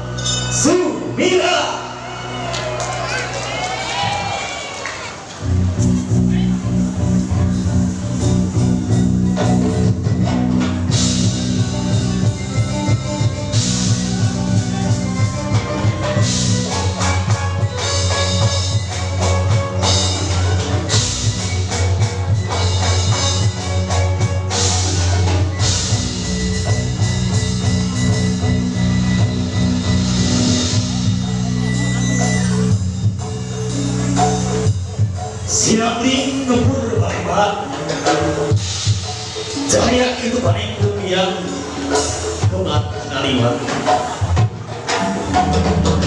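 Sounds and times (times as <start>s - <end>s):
instrumental music with low beat: 5.4s - 35.5s.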